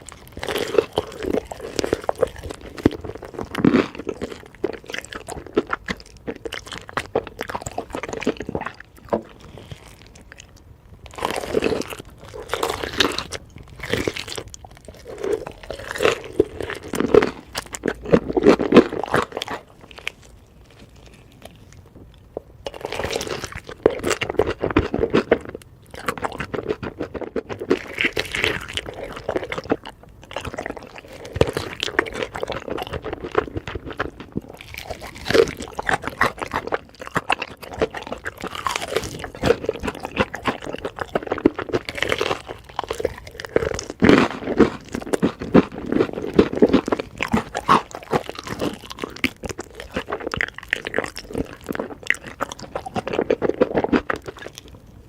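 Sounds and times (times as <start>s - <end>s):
crunchy chewing of fried chicken: 0.0s - 55.0s.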